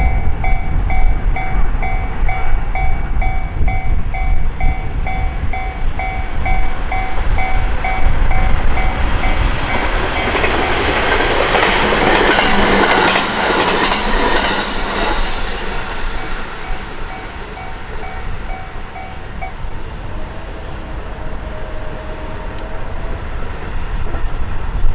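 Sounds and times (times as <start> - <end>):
level crossing bell ringing: 0.0 - 10.9
train passing: 0.0 - 24.9.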